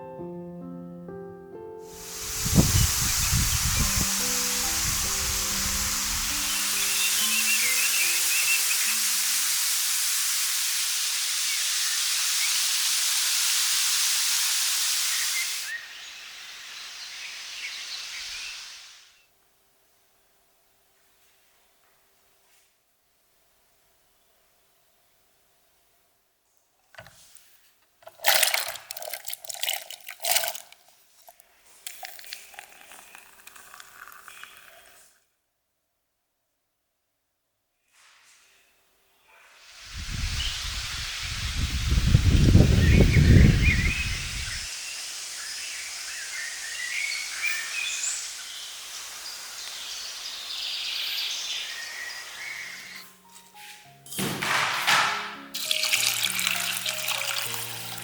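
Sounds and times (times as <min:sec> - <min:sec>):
soft music notes: 0:00.0 - 0:09.4, 0:53.0 - 0:58.0
steady high hiss: 0:01.8 - 0:19.3, 0:39.6 - 0:54.0
water running and splashing: 0:02.0 - 0:15.8, 0:28.1 - 0:35.1, 0:55.6 - 0:58.0
small birds chirping: 0:02.4 - 0:09.3, 0:15.0 - 0:18.9, 0:42.3 - 0:53.2.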